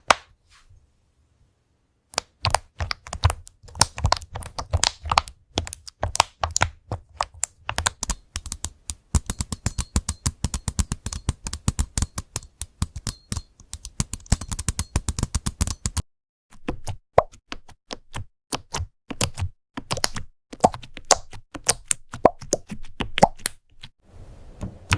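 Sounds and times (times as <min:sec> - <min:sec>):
computer keyboard typing: 0:02.2 - 0:16.0.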